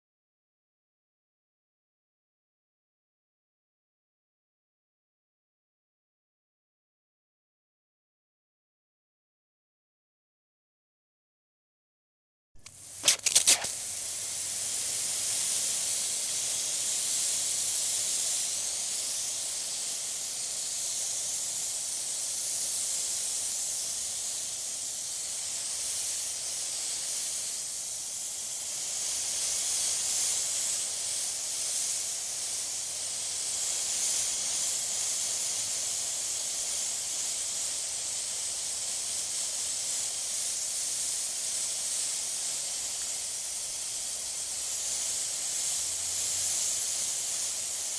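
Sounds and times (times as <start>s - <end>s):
water spraying from garden hose: 12.6s - 47.9s.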